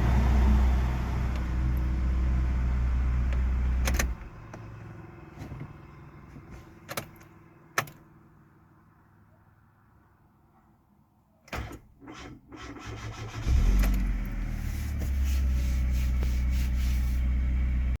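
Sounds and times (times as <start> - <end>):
car engine cranking: 0.0 - 8.1, 11.5 - 18.0
car engine idling: 0.0 - 8.9, 13.3 - 18.0.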